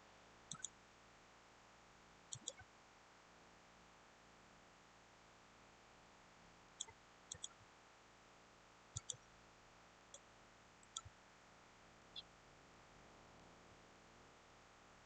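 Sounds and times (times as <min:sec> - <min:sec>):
faint steady hiss: 0:00.0 - 0:15.0
computer mouse clicking: 0:00.5 - 0:00.7, 0:02.3 - 0:02.6, 0:06.8 - 0:07.6, 0:09.0 - 0:09.3, 0:10.8 - 0:11.1.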